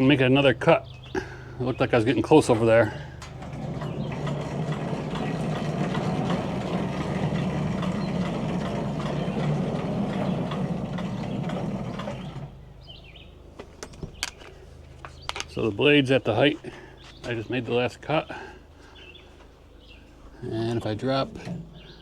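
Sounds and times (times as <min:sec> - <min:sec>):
band sawmill cutting log: 0:01.3 - 0:12.7, 0:20.4 - 0:22.0.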